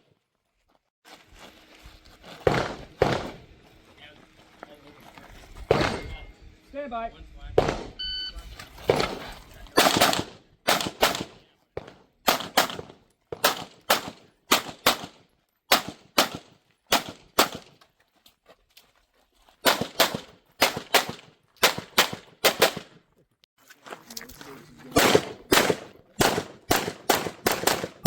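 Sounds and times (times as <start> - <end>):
pistol shots: 2.5 - 3.5, 5.7 - 6.3, 7.6 - 8.0, 8.9 - 17.7, 19.6 - 23.0, 24.9 - 28.0.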